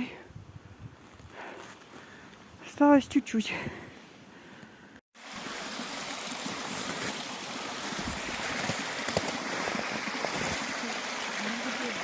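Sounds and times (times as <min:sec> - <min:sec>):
stream water rushing: 0:05.2 - 0:12.0.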